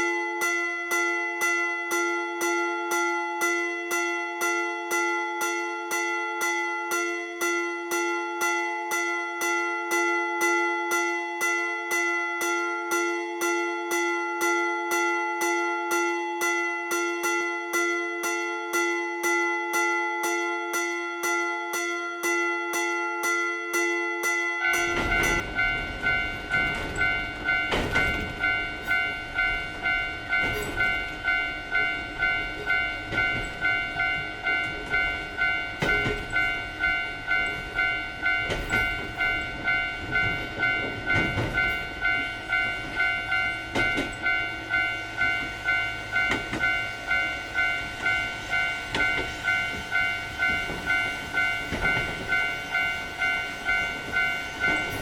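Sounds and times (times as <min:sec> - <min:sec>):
railroad crossing bell ringing: 0:00.0 - 0:55.0
train rumbling past: 0:24.6 - 0:55.0
wheels clacking over rail joints: 0:24.7 - 0:55.0.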